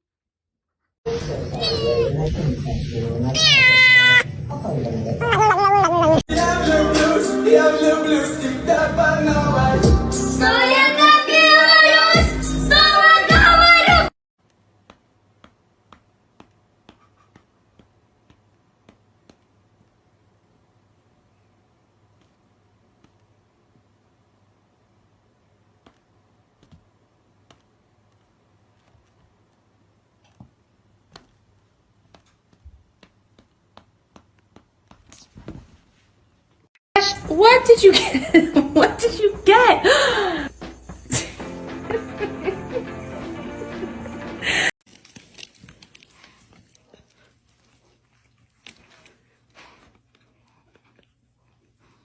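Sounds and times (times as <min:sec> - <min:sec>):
music with high singing voice: 0:06.3 - 0:14.1
faint clicks and taps: 0:23.0 - 0:23.3, 0:25.8 - 0:35.6.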